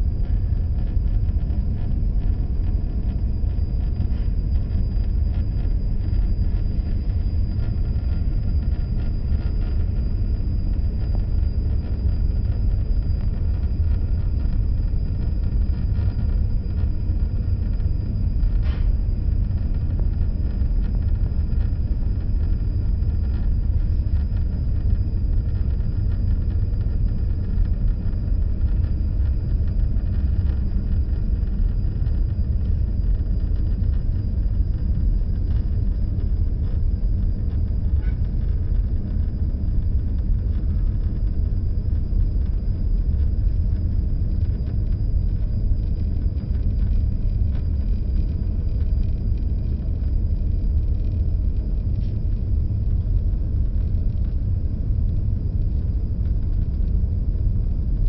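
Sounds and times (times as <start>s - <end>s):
faint high whine: 0.0s - 58.0s.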